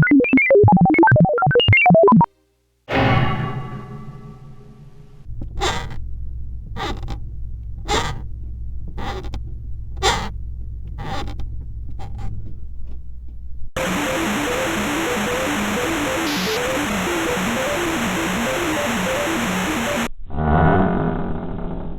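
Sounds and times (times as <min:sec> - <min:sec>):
low rumble with noisy gusts: 0:05.3 - 0:15.0
loud steady hiss: 0:13.8 - 0:20.1
simple electronic tune: 0:13.8 - 0:20.1.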